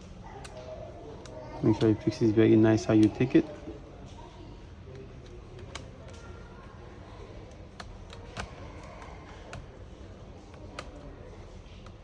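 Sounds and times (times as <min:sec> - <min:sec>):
clicks and taps of small parts: 0:04.8 - 0:06.8, 0:07.4 - 0:11.1, 0:11.7 - 0:12.0.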